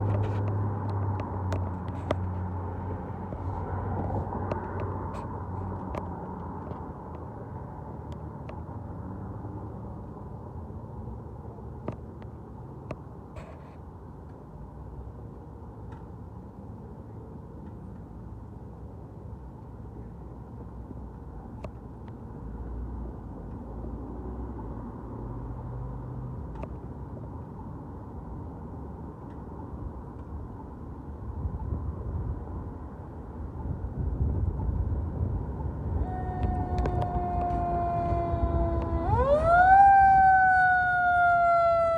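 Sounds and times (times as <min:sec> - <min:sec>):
fire engine rumble: 0:27.3 - 0:41.9.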